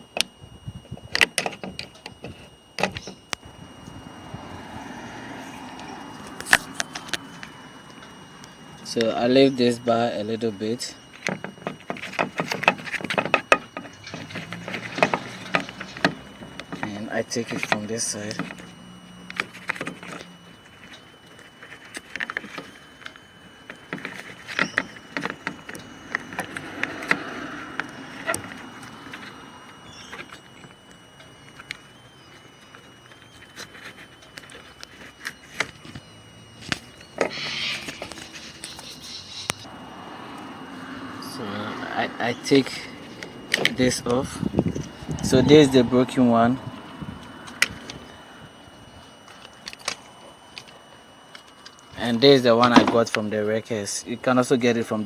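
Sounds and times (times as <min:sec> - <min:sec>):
sharp clicks and knocks: 0:11.2 - 0:18.6.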